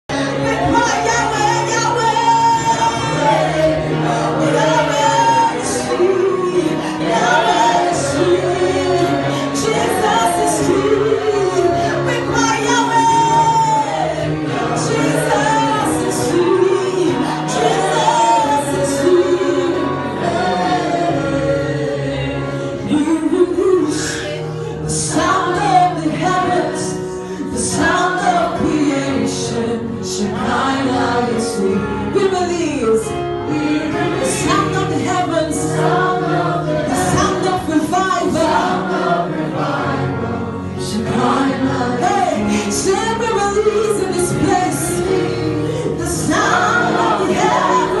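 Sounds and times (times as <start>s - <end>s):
gospel choir singing: 0.1s - 48.0s.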